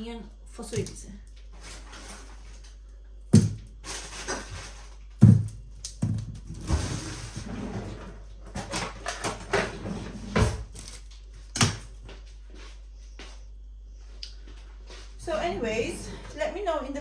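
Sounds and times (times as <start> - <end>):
knocks and thuds in kitchen: 3.3 - 4.6, 5.2 - 7.5, 8.5 - 10.8, 11.6 - 12.2.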